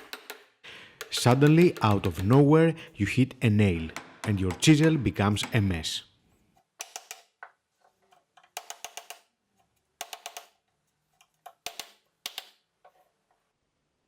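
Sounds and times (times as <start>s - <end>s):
chisel knocking into wood: 1.0s - 2.5s, 3.8s - 5.8s.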